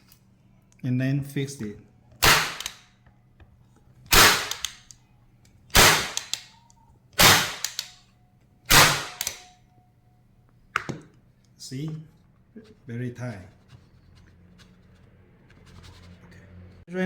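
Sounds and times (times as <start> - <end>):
staple gun snapping: 2.2 - 2.8, 4.1 - 4.9, 5.7 - 6.5, 7.2 - 8.0, 8.7 - 9.5.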